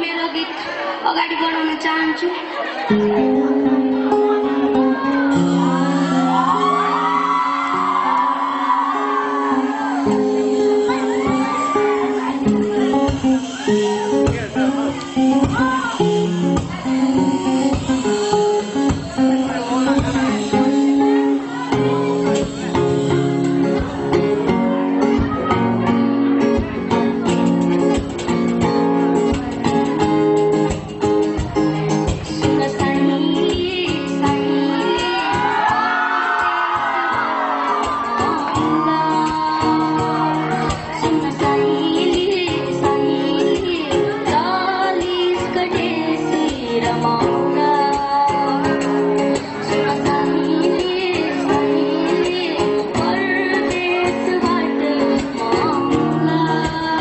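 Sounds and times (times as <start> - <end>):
guitar-led instrumental music: 2.7 - 57.0
person singing: 3.1 - 25.7, 31.6 - 57.0.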